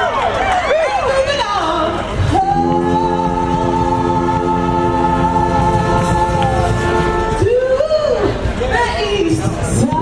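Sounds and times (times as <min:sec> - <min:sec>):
brass band sustained chord: 0:02.4 - 0:08.1.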